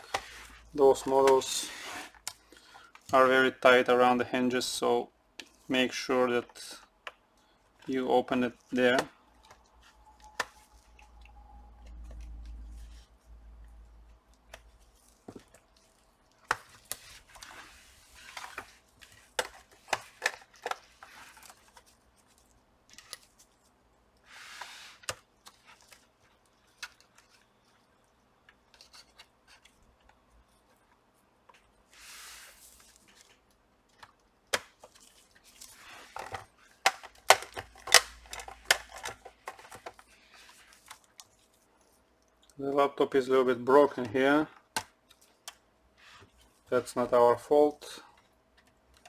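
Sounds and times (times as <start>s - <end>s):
tool scraping plastic: 0.0s - 2.4s
plastic clips snapping loose: 36.2s - 39.9s.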